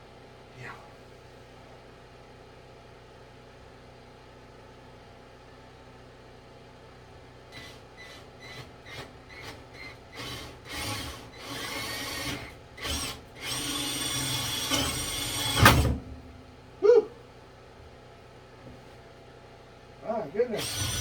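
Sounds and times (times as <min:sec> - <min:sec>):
power drill whining: 0:07.6 - 0:16.0, 0:20.5 - 0:21.0.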